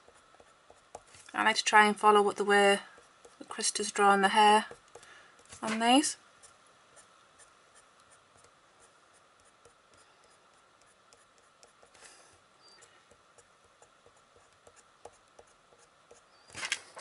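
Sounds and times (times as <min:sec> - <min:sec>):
pencil scratching on paper: 0:06.4 - 0:12.2, 0:12.8 - 0:16.3.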